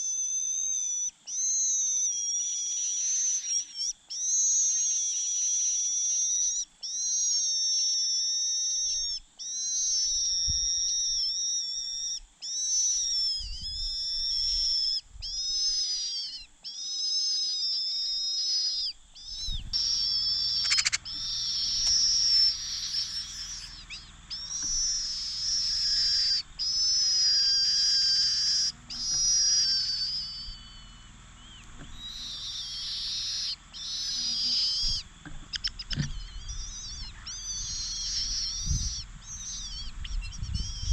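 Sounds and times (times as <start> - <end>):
young cuckoo begging calls: 0.0 - 40.9.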